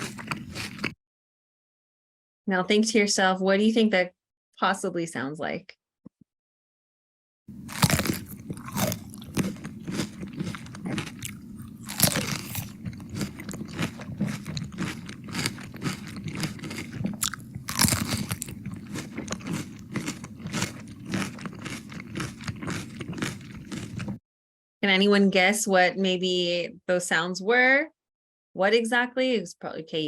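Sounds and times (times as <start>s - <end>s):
person chewing crunchy vegetables: 0.0s - 1.0s, 7.5s - 24.2s.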